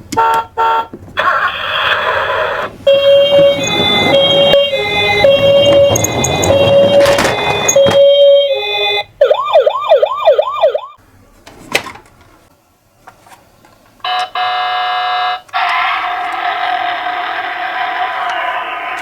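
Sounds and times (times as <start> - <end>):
toy electronic siren: 1.2 - 11.0, 14.1 - 19.0.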